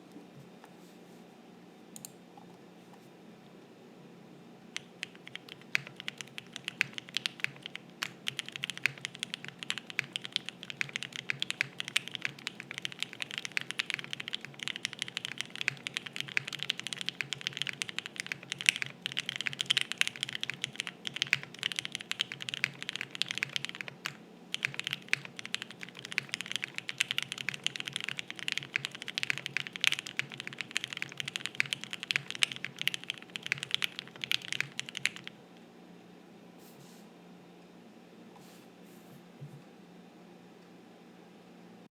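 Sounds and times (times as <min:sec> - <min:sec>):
mechanical keyboard typing: 0:04.8 - 0:35.3.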